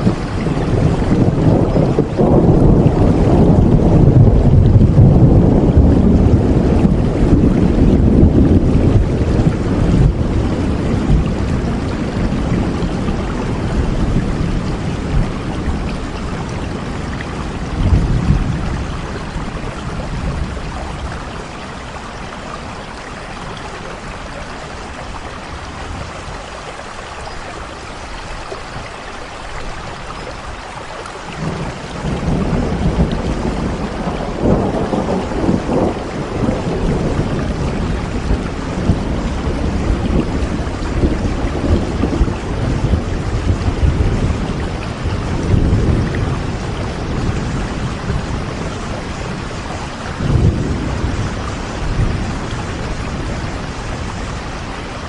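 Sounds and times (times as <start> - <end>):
rumbling thunder: 0.0 - 22.0, 31.3 - 55.0
steady rain falling: 0.0 - 55.0.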